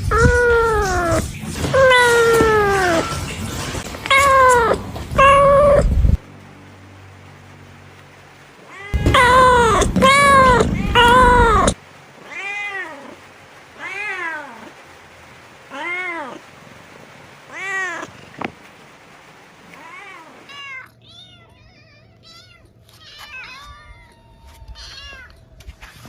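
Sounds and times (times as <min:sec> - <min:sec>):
cat meowing: 0:00.0 - 0:03.4, 0:04.1 - 0:06.2, 0:08.7 - 0:13.2, 0:13.8 - 0:14.8, 0:15.7 - 0:16.4, 0:17.5 - 0:18.2, 0:19.7 - 0:25.4.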